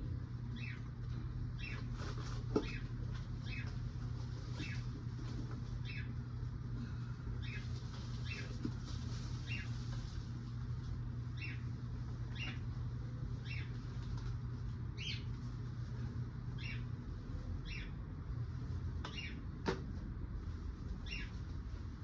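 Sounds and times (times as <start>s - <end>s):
steady low hum: 0.0s - 22.0s
bird chirping: 0.6s - 0.9s, 1.6s - 1.9s, 3.4s - 3.8s, 4.6s - 4.8s, 5.8s - 6.1s, 7.4s - 7.7s, 11.4s - 11.7s, 12.3s - 12.6s, 13.4s - 13.7s, 15.0s - 15.3s, 16.5s - 16.9s, 17.6s - 18.0s, 19.1s - 19.4s, 21.0s - 21.3s.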